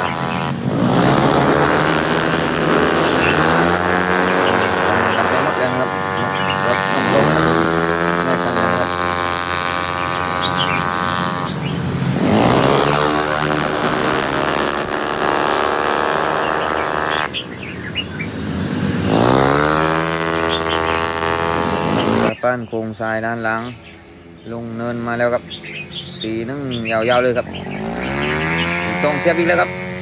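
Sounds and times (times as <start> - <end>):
racing car engine accelerating: 0.0 - 22.4, 27.1 - 30.0.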